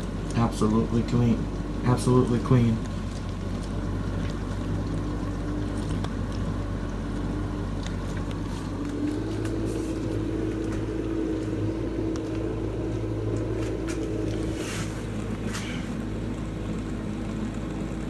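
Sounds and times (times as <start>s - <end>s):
dishwasher pump humming: 0.0s - 18.0s
water spraying: 13.6s - 16.0s.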